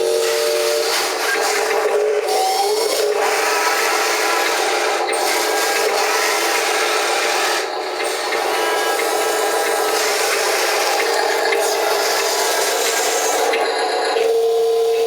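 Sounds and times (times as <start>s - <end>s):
drive whine: 13.4s - 15.0s.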